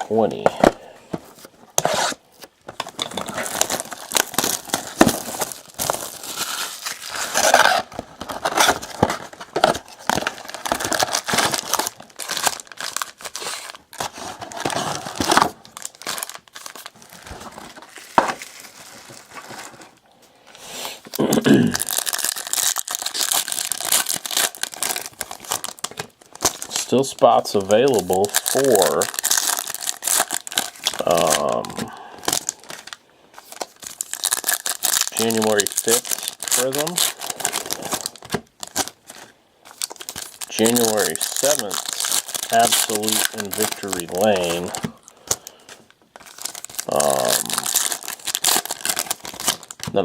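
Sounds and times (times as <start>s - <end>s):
plastic wrapping crinkling: 0.0s - 20.1s, 21.0s - 50.0s.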